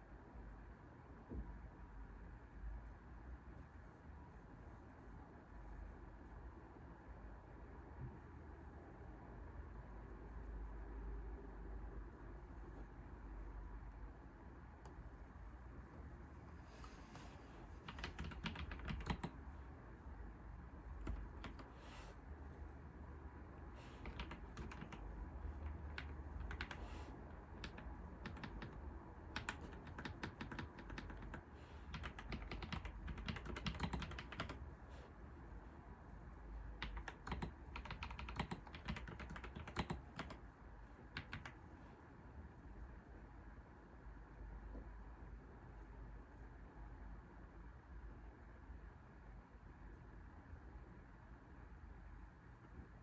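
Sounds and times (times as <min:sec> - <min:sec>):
faint low hum: 0:00.0 - 0:53.0.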